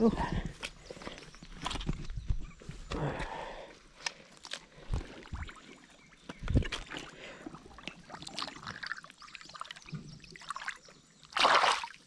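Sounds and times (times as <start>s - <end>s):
water trickling and dripping: 5.0s - 12.0s.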